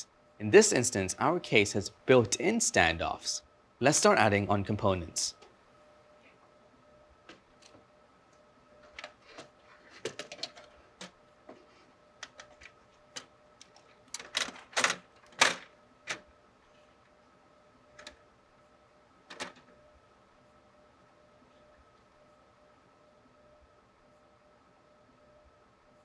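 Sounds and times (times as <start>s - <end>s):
computer parts clicking and knocking: 8.8s - 16.3s, 18.0s - 18.2s, 19.3s - 19.7s.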